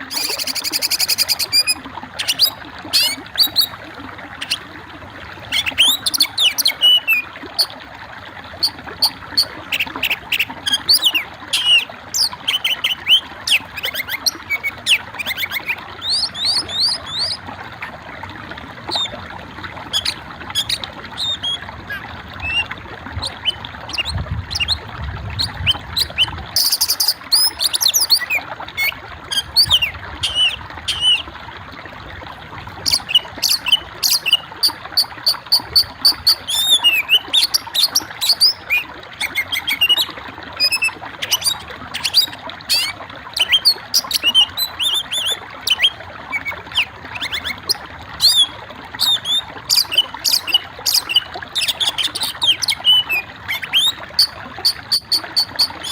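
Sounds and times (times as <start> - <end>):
small birds chirping: 0.0 - 3.8, 9.7 - 17.4, 25.4 - 28.4, 29.4 - 31.2, 32.8 - 34.7, 40.6 - 55.9.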